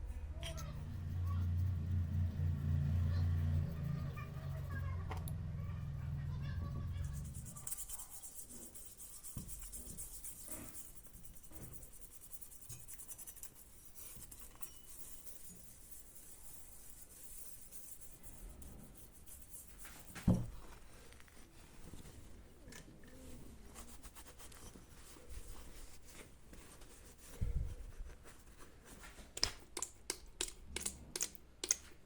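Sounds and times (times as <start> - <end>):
scratchy rubbing on axe: 7.0 - 13.6.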